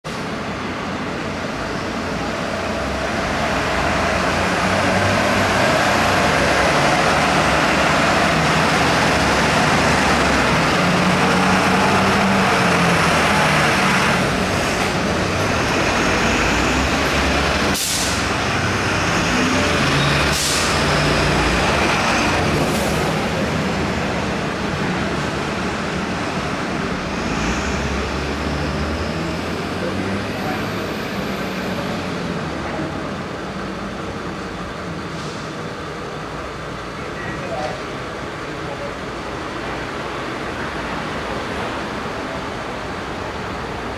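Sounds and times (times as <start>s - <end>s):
heavy vehicle engines running: 0.0s - 43.9s
road traffic noise: 0.0s - 43.9s.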